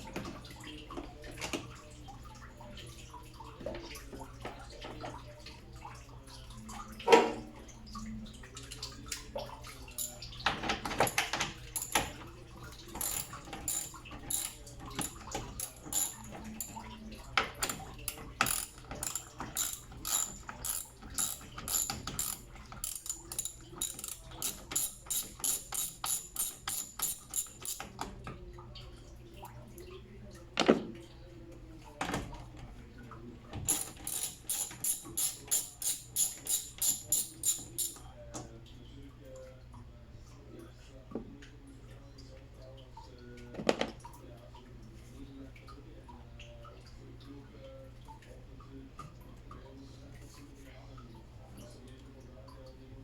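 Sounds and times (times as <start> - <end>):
hand ratchet clicking: 11.8 - 12.1, 13.0 - 16.8, 18.4 - 27.9, 33.7 - 38.0.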